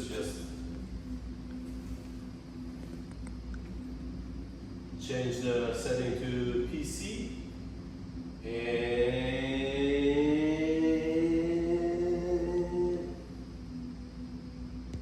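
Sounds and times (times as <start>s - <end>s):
man singing a long note: 8.4s - 13.5s.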